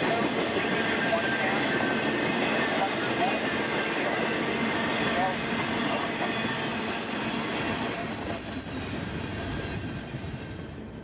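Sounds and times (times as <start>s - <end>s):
freight train cars rolling: 0.0s - 11.0s
high wheel squeal: 6.0s - 9.8s.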